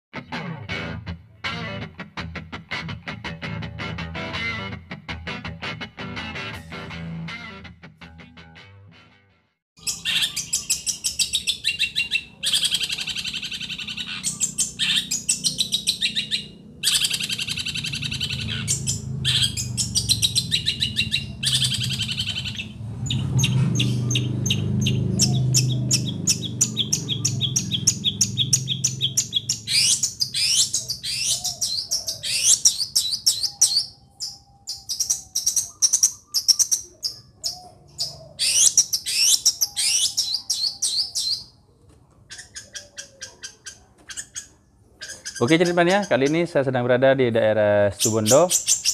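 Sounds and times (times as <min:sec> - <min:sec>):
bird chattering and whistling: 0:09.8 - 0:41.6, 0:42.3 - 0:46.8, 0:47.9 - 0:48.9.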